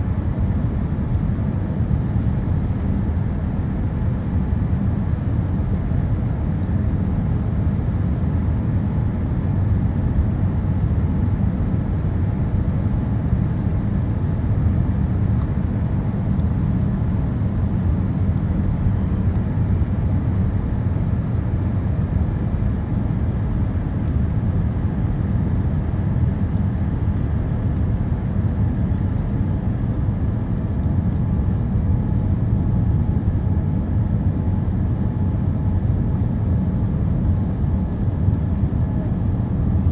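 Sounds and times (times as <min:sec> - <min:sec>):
airplane cabin engine drone: 0:00.0 - 0:39.9.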